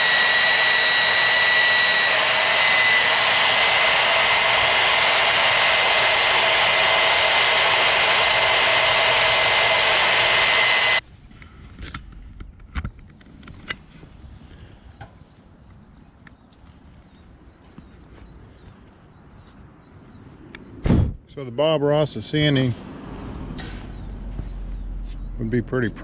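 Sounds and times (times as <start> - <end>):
belt sander grinding: 0.0 - 11.0.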